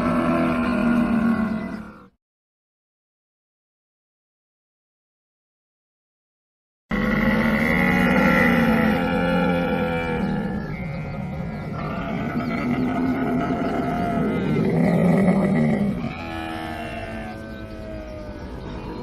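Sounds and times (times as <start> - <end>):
camel bellowing: 0.0 - 2.1, 6.9 - 19.0.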